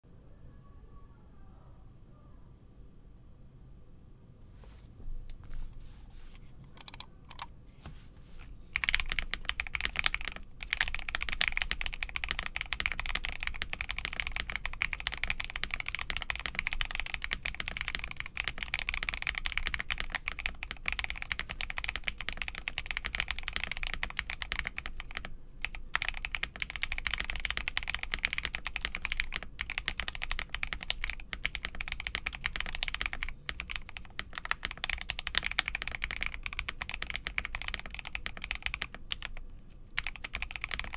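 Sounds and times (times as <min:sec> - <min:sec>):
fast typing on mechanical keyboard: 0:06.8 - 0:07.5, 0:08.7 - 0:39.4, 0:40.0 - 0:40.9.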